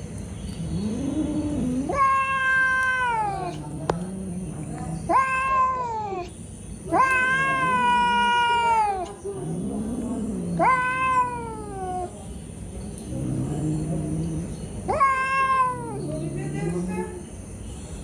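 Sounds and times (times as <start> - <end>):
cat meowing: 0.8 - 4.0, 5.1 - 6.3, 6.9 - 9.2, 10.6 - 12.1, 14.9 - 16.1.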